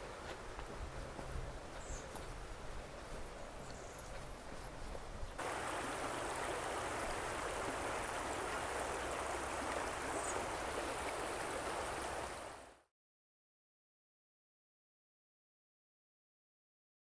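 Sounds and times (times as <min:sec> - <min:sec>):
stream water babbling: 0:05.4 - 0:12.8.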